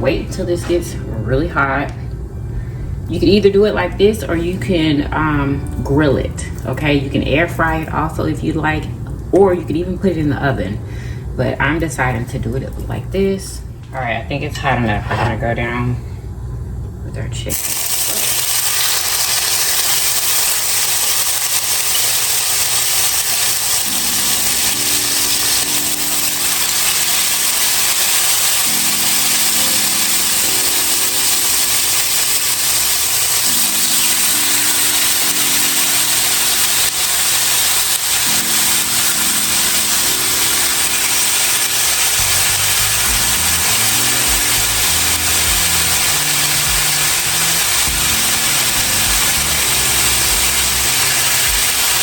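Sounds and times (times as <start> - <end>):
looping low melody: 0.0 - 10.6, 23.8 - 52.0
bass line: 2.3 - 9.5, 42.2 - 51.6
chicken sizzling in hot oil: 17.5 - 52.0.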